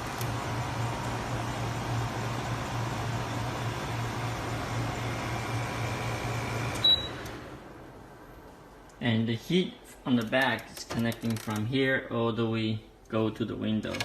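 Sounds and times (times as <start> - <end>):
air conditioner fan running: 0.0 - 14.0
short high beep: 6.8 - 7.2.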